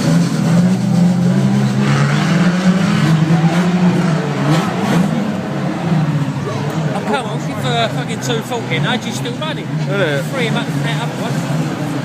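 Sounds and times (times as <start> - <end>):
race car engines revving: 0.0 - 12.0.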